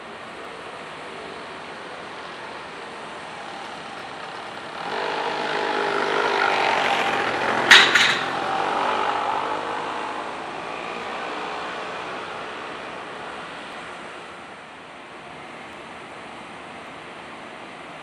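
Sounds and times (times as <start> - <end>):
vehicle passing: 2.0 - 14.4
sharp clatter: 7.1 - 8.6.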